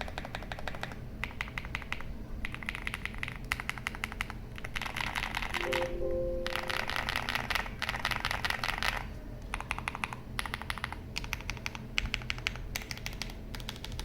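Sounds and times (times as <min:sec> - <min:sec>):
mechanical keyboard typing: 0:10.5 - 0:14.0.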